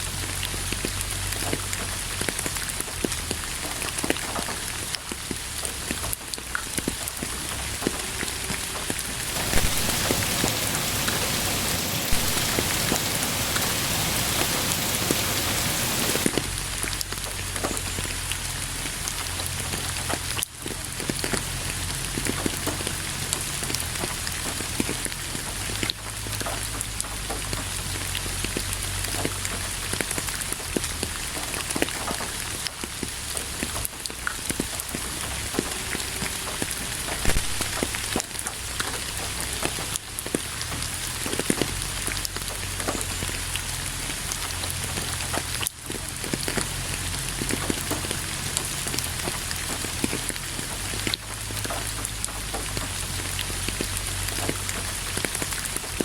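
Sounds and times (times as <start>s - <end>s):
rain falling: 0.0s - 56.0s
raindrops striking a surface: 0.0s - 56.0s
low rumble: 7.2s - 17.0s.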